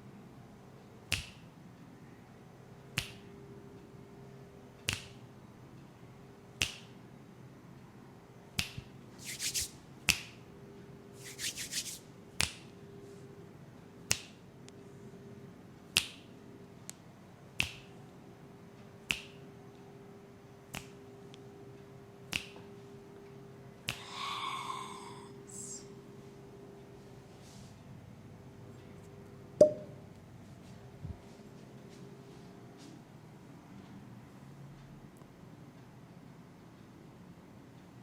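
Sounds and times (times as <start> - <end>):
finger snapping: 1.1 - 1.4, 3.0 - 3.2, 4.9 - 5.2, 6.6 - 7.0, 8.6 - 10.4, 11.2 - 12.7, 14.1 - 14.4, 16.0 - 16.3, 17.6 - 17.9, 19.1 - 19.4, 20.7 - 21.0, 22.3 - 22.6, 23.9 - 24.2.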